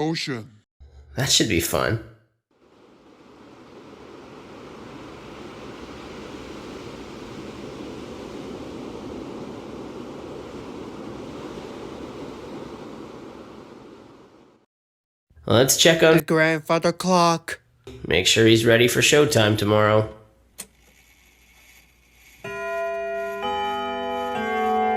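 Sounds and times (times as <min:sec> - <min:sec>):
ocean waves washing: 0:02.5 - 0:14.7, 0:21.0 - 0:24.9.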